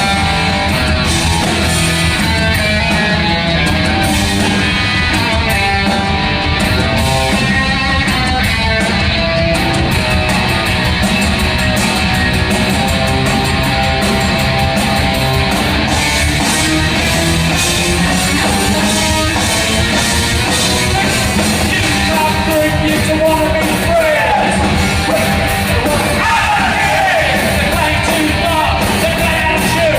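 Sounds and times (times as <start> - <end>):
strummed electric guitars: 0.0 - 29.9.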